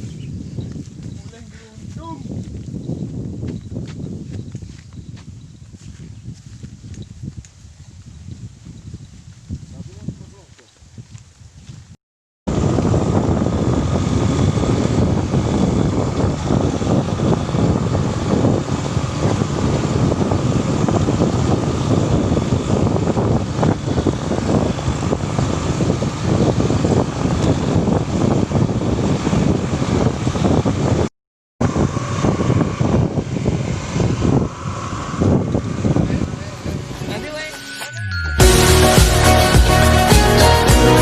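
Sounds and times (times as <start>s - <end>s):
vehicle rushing rumble: 12.5s - 41.0s.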